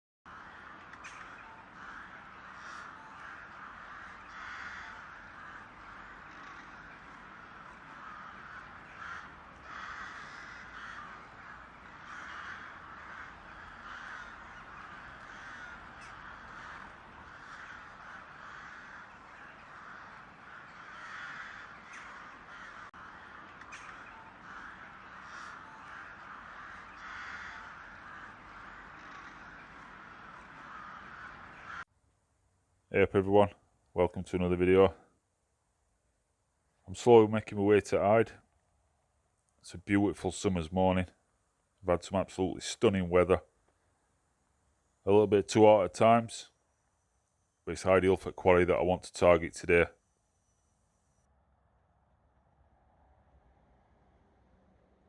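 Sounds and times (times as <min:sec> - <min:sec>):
crows cawing: 0:00.3 - 0:31.9.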